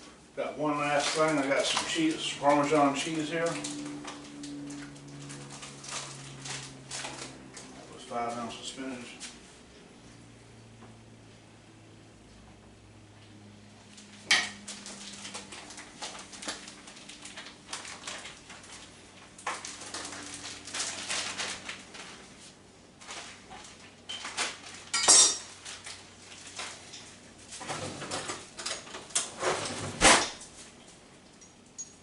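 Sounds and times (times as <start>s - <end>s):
cookware clinking and scraping: 24.9s - 25.5s.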